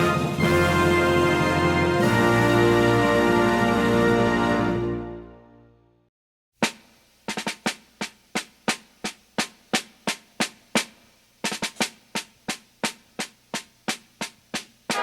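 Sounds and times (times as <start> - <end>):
snare drum marching cadence: 0.0 - 3.2, 6.6 - 15.0.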